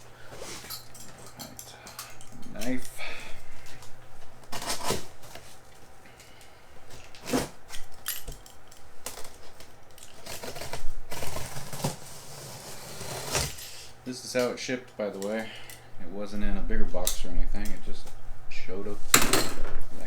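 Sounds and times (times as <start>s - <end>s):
knife cutting cardboard box: 4.5s - 5.4s, 7.1s - 7.7s, 10.2s - 14.0s.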